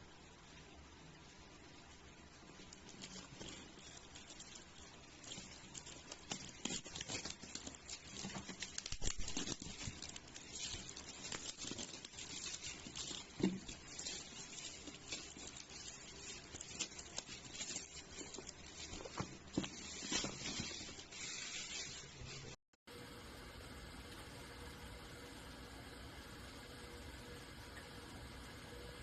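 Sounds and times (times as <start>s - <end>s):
objects clicking and rustling: 2.6s - 22.0s.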